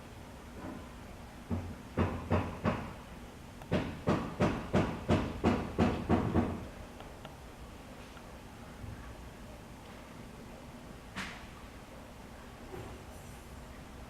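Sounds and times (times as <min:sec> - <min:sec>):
sharp knocks with thumps: 0:03.7 - 0:06.6.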